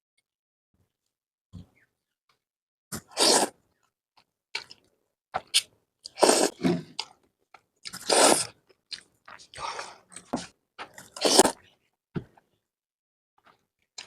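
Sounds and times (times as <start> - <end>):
person slurping noodles: 3.0 - 3.6, 6.1 - 7.2, 7.9 - 8.6, 9.4 - 11.6
chewing noises: 7.8 - 11.7.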